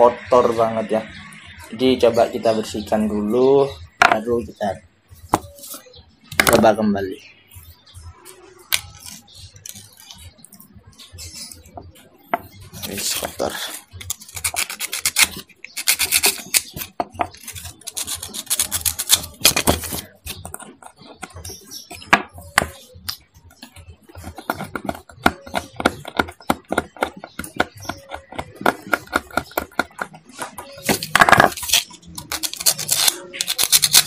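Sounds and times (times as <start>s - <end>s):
scraping on small metal parts: 8.7s - 11.6s, 12.7s - 21.9s, 27.5s - 34.0s.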